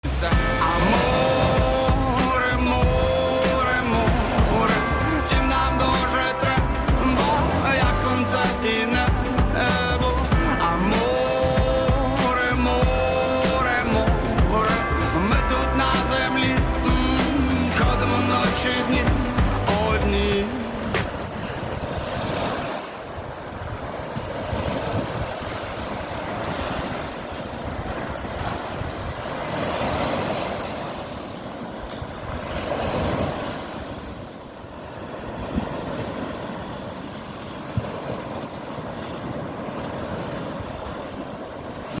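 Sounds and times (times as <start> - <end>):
sea waves breaking on beach: 0.0 - 42.0
wind buffeting microphone: 0.4 - 42.0.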